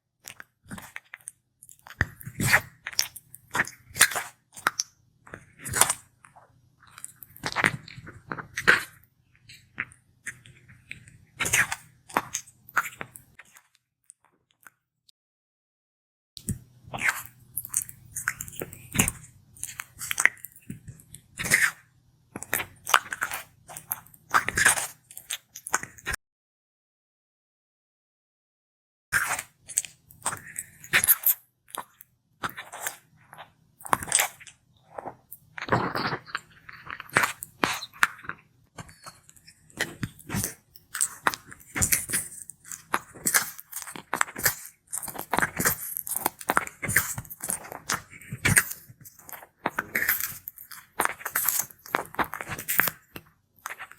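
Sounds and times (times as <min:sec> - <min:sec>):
tortoise chewing crunchy food: 0:16.4 - 0:21.8, 0:22.4 - 0:26.2, 0:29.2 - 0:53.9
tortoise chewing wet crunches: 0:38.8 - 0:53.0.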